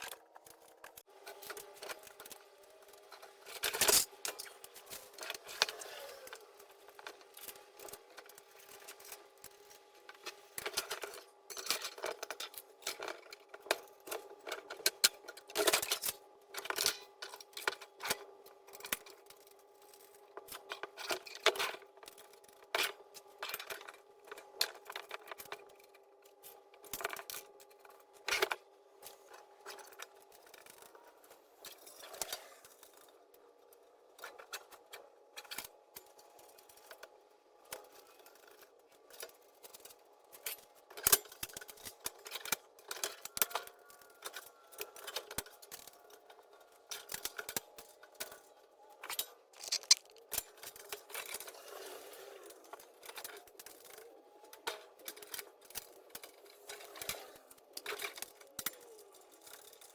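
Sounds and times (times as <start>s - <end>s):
steel parts clinking: 49.6s - 50.2s.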